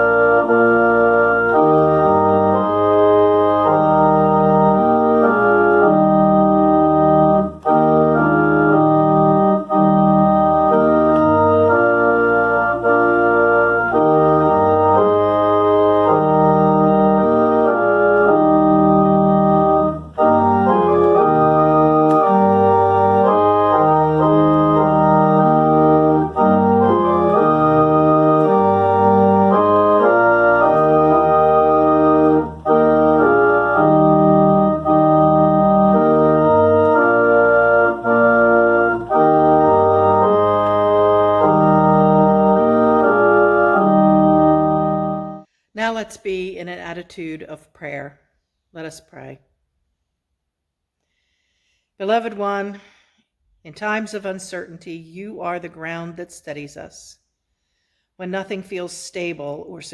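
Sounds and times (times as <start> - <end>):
organ playing sustained chords: 0.0 - 45.5.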